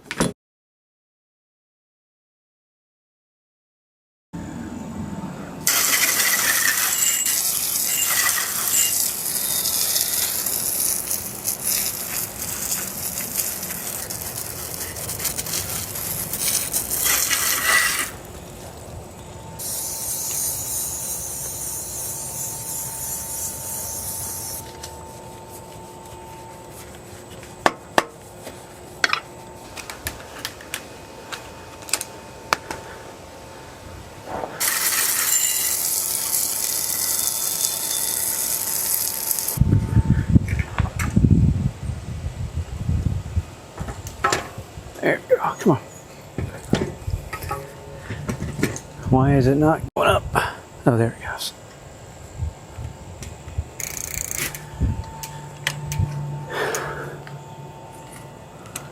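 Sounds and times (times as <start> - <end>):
hissing spray: 5.7 - 18.2, 19.6 - 24.7
sharp mechanical clicks: 53.8 - 56.1.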